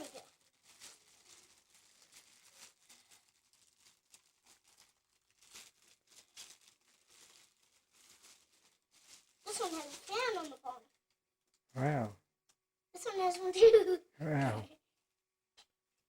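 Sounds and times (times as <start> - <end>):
packaging rustling: 0.0 - 10.7.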